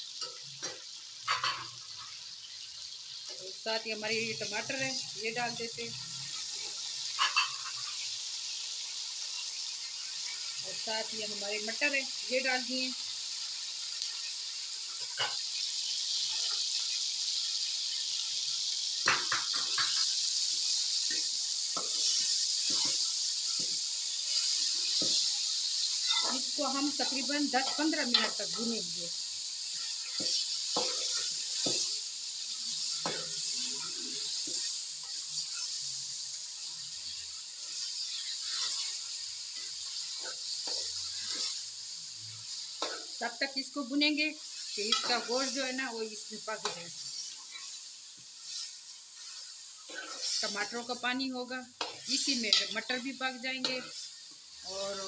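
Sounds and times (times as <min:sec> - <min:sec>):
food sizzling in oil: 0:00.0 - 0:55.0
spoon knocking and scraping pot: 0:07.1 - 0:07.8, 0:19.0 - 0:20.2.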